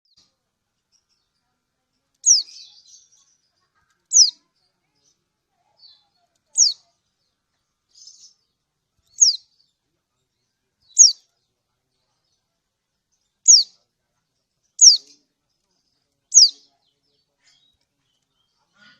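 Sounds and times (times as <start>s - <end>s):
bird high chirps falling in pitch: 2.2s - 2.5s, 4.1s - 4.4s, 6.6s - 6.8s, 9.2s - 9.4s, 11.0s - 11.2s, 13.5s - 13.7s, 14.8s - 15.0s, 16.3s - 16.6s
faint bird twitters: 2.2s - 6.9s, 9.1s - 9.6s, 10.9s - 11.3s, 13.4s - 13.8s, 14.8s - 15.3s, 16.3s - 16.8s.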